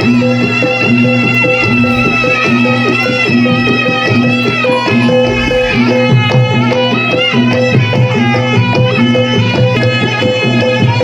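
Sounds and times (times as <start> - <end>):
held wind instrument note: 1.4 - 6.2
short pitched strikes: 1.5 - 6.5.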